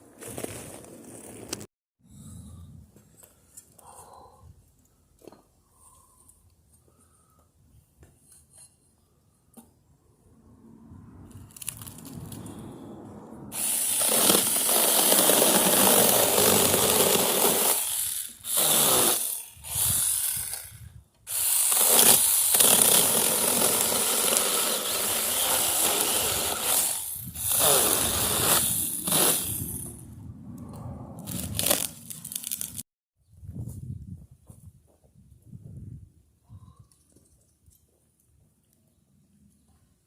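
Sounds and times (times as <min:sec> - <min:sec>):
chainsaw cutting branches: 0:13.5 - 0:30.0, 0:31.3 - 0:32.8.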